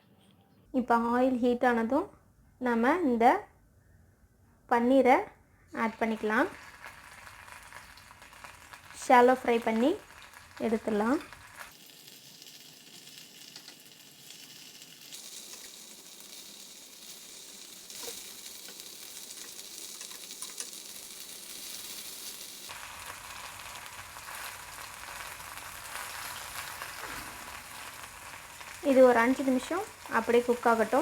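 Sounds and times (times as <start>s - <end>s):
cheese sizzling in hot oil: 5.9s - 31.0s.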